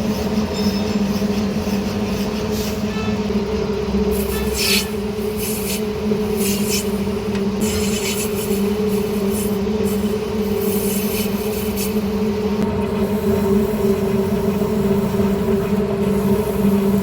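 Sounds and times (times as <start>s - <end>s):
lathe motor hum: 3.2s - 17.0s.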